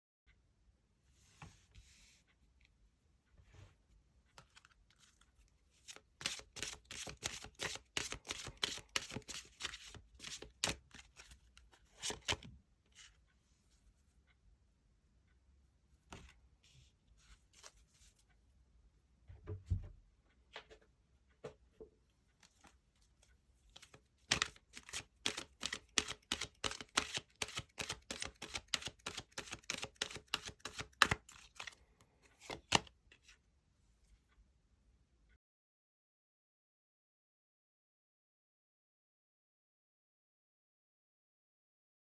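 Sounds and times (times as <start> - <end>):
cards tapping and sliding: 5.8 - 11.4, 12.0 - 12.5, 23.8 - 31.8, 32.4 - 32.9.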